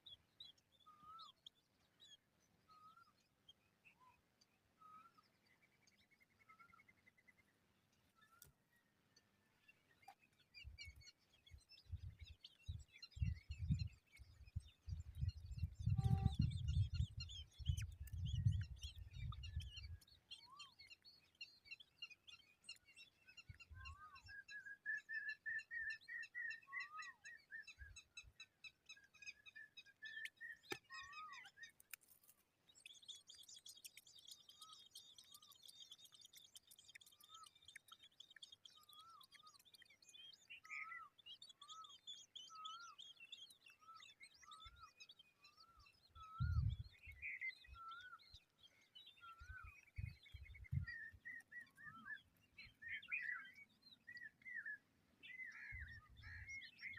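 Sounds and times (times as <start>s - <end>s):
small birds chirping: 0.0s - 56.9s.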